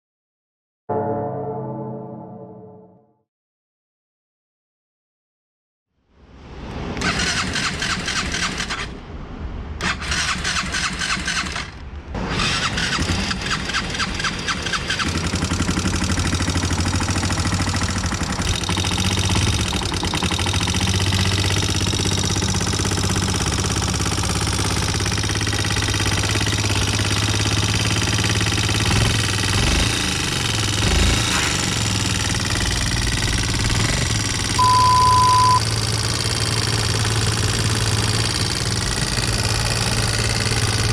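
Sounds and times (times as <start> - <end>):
motorcycle engine clattering and idling: 12.7 - 34.6, 35.7 - 40.9
steady beep tone: 34.6 - 35.6.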